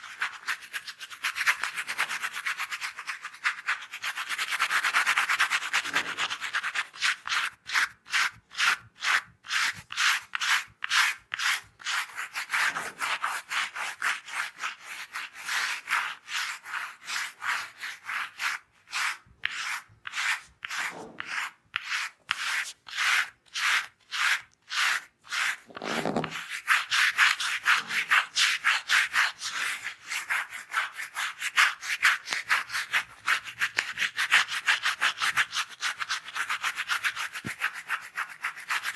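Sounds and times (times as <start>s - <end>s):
rubbing on hair and scalp: 15.2s - 31.4s.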